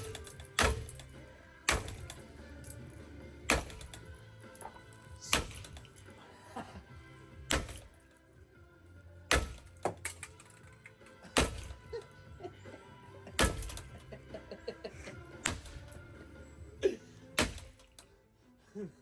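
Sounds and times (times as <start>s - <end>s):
music playing: 0.0s - 19.0s.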